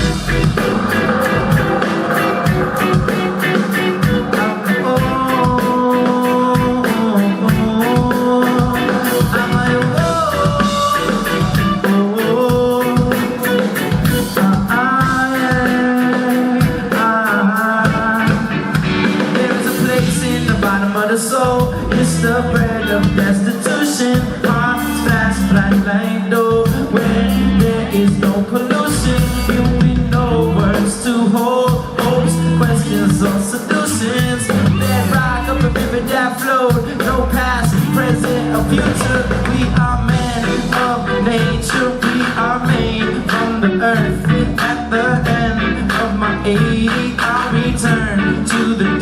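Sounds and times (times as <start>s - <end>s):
drum kit beat: 0.0s - 49.0s
reggae band playing: 0.0s - 49.0s.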